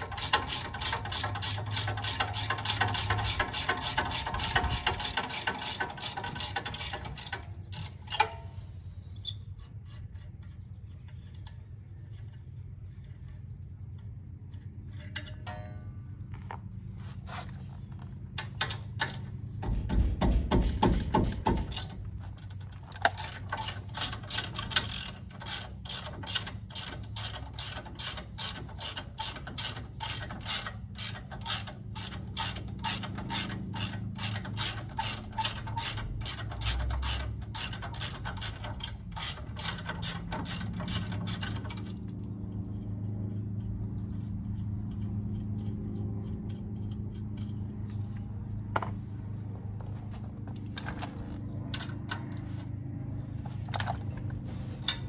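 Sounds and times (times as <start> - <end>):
ratchet wrench clicking: 0.0 - 10.0, 23.0 - 42.0.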